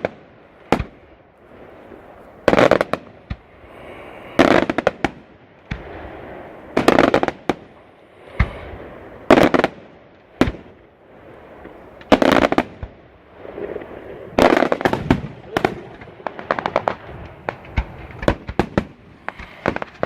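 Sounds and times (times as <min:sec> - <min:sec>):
firework shells bursting: 0:11.6 - 0:20.0.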